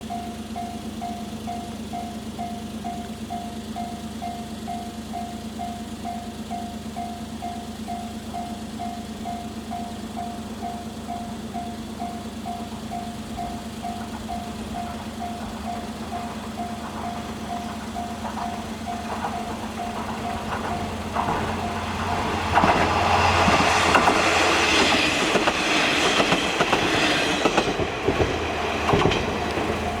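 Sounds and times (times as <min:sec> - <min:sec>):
level crossing alarm ringing: 0:00.0 - 0:23.8
diesel railcar engine droning: 0:00.0 - 0:30.0
wheels clacking over rail joints: 0:00.0 - 0:30.0.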